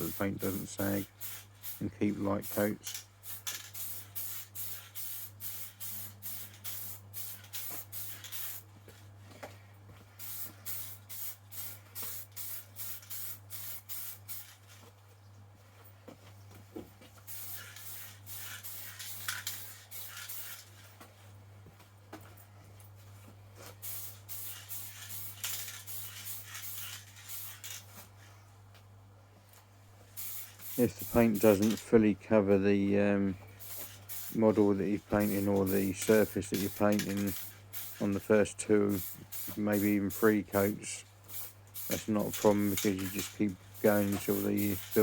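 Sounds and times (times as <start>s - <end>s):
spray paint can hissing: 0.0s - 8.6s, 10.2s - 14.6s, 17.2s - 20.9s, 23.8s - 28.0s, 30.1s - 31.8s, 33.6s - 45.0s
steady low hum: 0.0s - 14.3s, 27.6s - 45.0s.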